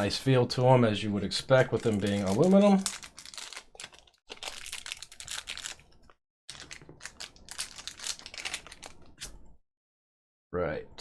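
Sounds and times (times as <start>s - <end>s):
plastic bags crinkling: 1.7s - 9.1s.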